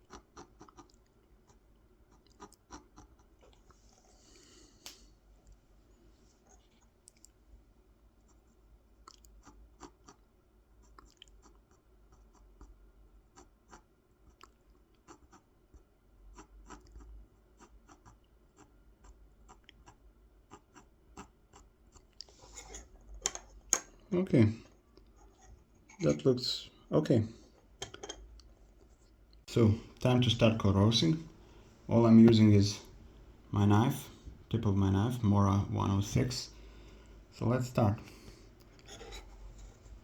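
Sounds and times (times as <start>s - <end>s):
pencil scratching on wood: 16.3s - 23.5s, 38.8s - 40.0s.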